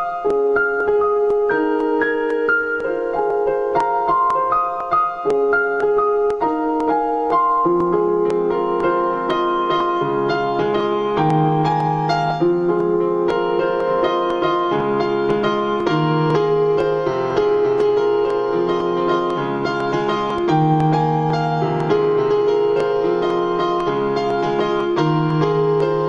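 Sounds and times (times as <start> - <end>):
calm keyboard music: 0.0 - 26.0.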